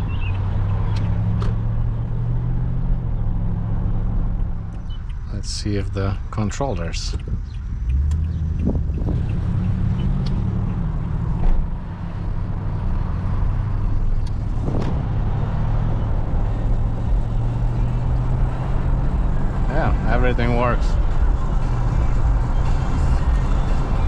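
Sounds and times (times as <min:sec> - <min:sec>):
engine and road rumble in cab: 0:00.0 - 0:24.0.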